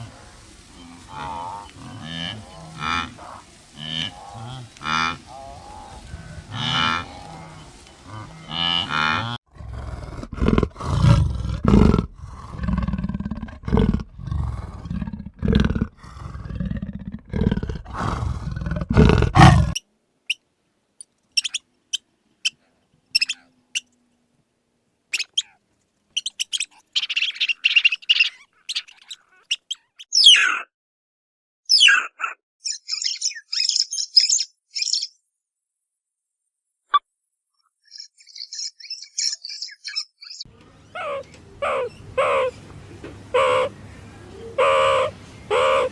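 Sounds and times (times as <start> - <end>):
mooing call: 0.8 - 9.4
large animal roaring: 0.8 - 19.8
faint high chirps: 21.4 - 22.6, 23.2 - 24.0, 25.2 - 25.5, 26.2 - 30.4.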